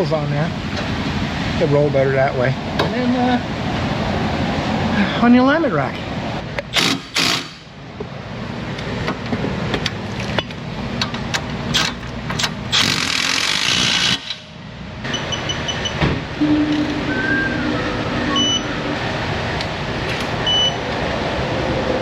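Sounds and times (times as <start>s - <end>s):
power tool bursts: 6.8s - 7.6s, 12.7s - 14.4s
sharp clicks and knocks: 9.0s - 12.9s
quick high beeps: 15.1s - 19.0s.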